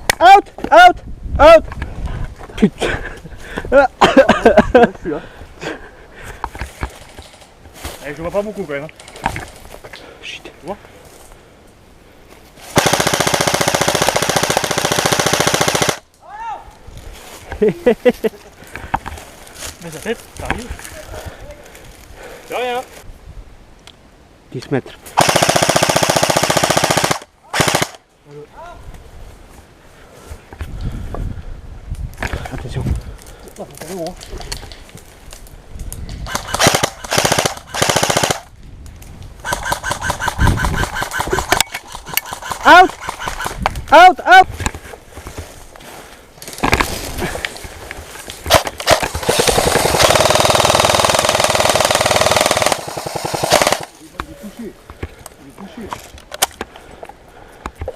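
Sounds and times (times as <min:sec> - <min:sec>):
airsoft gun full-auto burst: 0:12.8 - 0:16.0, 0:25.2 - 0:28.0, 0:36.3 - 0:38.5, 0:39.4 - 0:43.6, 0:48.5 - 0:53.9.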